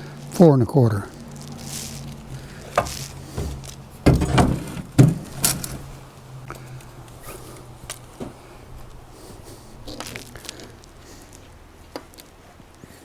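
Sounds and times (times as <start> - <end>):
low steady hum: 0.0 - 13.0
boards and tools clattering: 1.7 - 10.9.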